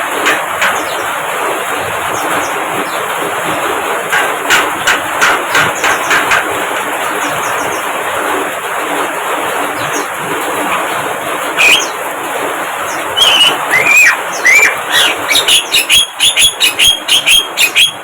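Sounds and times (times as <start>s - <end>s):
bird rasping chatter: 0.2s - 1.2s, 2.1s - 3.2s, 4.1s - 8.0s, 11.5s - 12.0s, 12.8s - 18.0s
bird sharp clicking notes: 0.2s - 1.2s, 4.1s - 7.9s, 11.5s - 12.0s, 12.8s - 18.0s.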